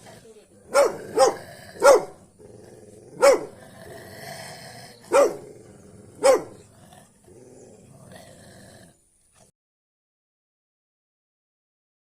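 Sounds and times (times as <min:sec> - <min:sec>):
dog growling: 0:00.0 - 0:09.5
dog barks: 0:00.7 - 0:02.2, 0:03.2 - 0:03.6, 0:05.0 - 0:05.5, 0:06.2 - 0:06.7.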